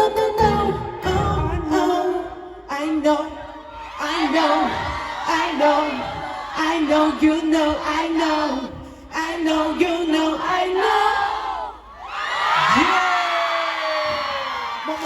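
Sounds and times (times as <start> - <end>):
live pop song singing: 0.0 - 11.4
crowd whooping and yelling: 3.5 - 8.0, 10.4 - 15.0.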